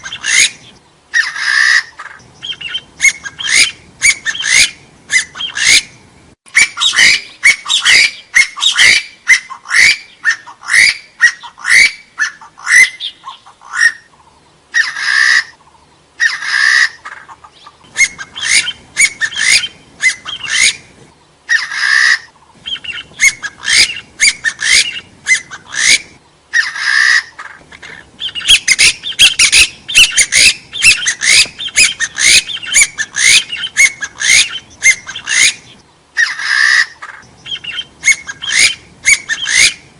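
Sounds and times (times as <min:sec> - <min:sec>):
partridge whistled calls: 0:00.0 - 0:39.9.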